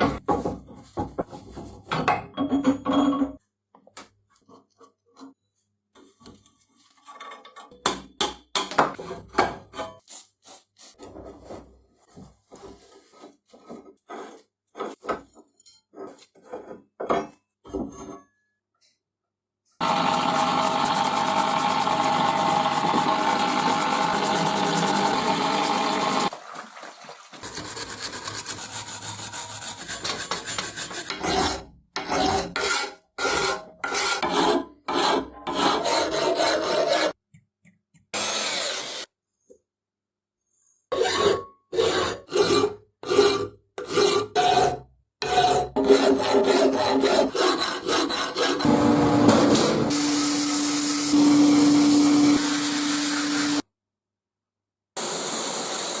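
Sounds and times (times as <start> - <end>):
file rasping on metal: 19.8 - 26.3, 27.4 - 37.2, 40.9 - 48.7.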